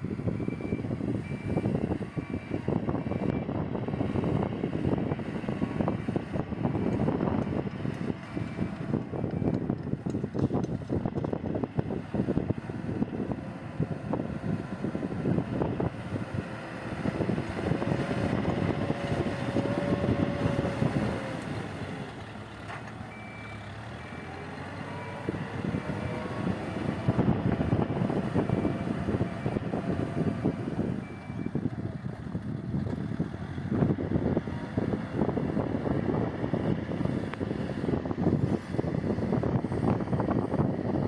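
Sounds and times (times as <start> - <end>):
heavy machine engine labouring: 0.0 - 41.0
reversing alarm beeps: 0.4 - 3.6, 23.1 - 24.4, 28.1 - 31.6.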